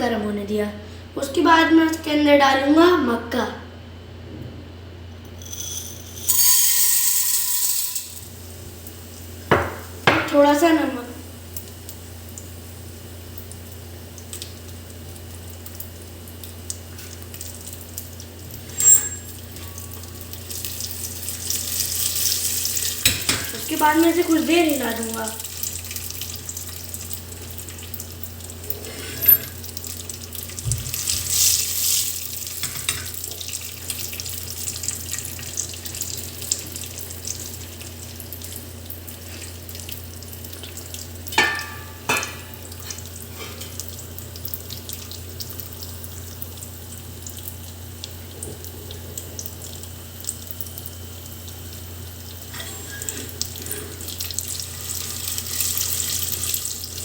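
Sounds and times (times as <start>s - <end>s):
kernels sizzling in hot oil: 5.3s - 57.0s
knocks against pot: 9.5s - 10.4s.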